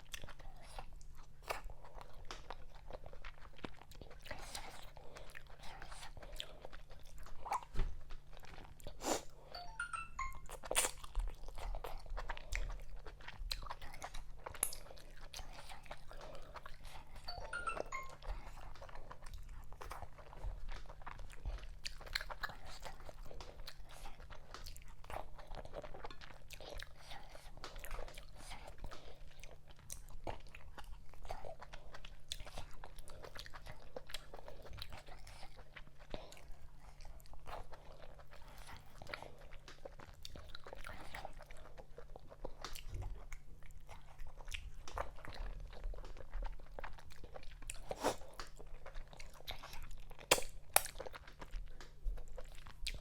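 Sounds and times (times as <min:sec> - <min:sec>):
wet chewing and smacking: 0:00.0 - 0:53.0
short stepped high tones: 0:09.6 - 0:10.5, 0:17.3 - 0:18.2.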